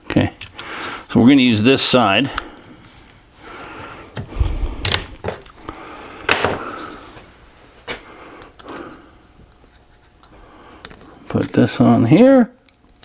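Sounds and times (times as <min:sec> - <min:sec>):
knocks and clicks of tools: 0:04.2 - 0:05.4.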